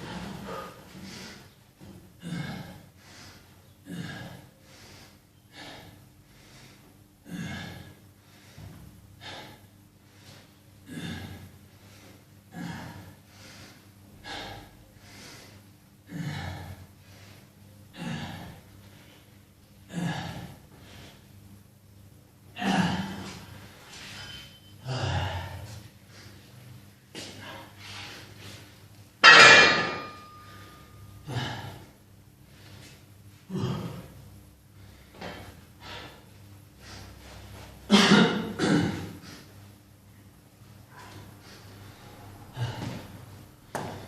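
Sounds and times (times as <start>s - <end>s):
person breathing hard: 2.2s - 21.4s, 29.9s - 37.6s, 40.9s - 44.0s.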